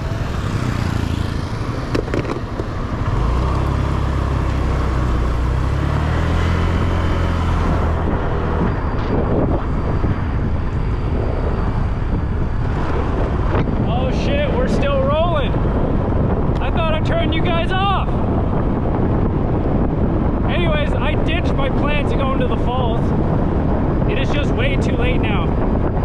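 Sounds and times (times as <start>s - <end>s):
motorbike engine running: 0.0s - 14.4s
wind and road noise: 0.0s - 26.0s.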